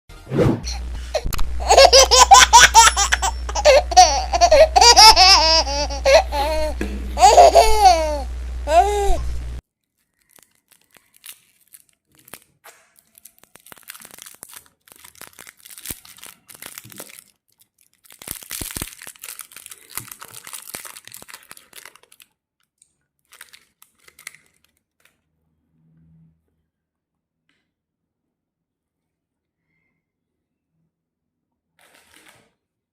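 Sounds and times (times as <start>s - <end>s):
wrappers tearing and crinkling: 9.8s - 22.4s, 23.2s - 25.1s.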